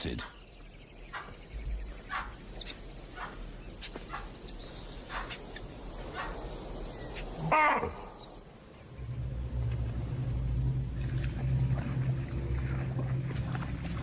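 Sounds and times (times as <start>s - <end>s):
animal alarm barks: 2.1s - 2.4s, 3.1s - 3.4s, 6.1s - 6.4s.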